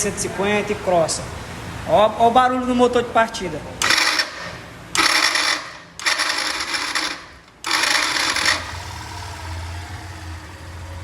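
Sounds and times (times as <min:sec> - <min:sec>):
starter motor cranking with grinding: 0:03.8 - 0:11.0
motorcycle engine idling: 0:05.1 - 0:11.0.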